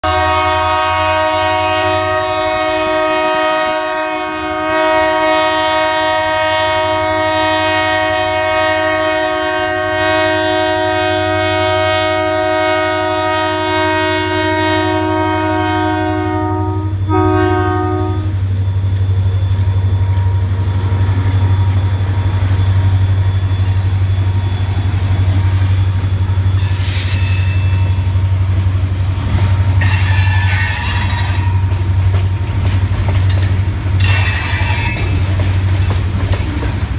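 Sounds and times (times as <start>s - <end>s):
locomotive air horn: 0.0s - 18.6s
train passing: 0.0s - 36.9s
locomotive engine humming: 0.1s - 36.9s.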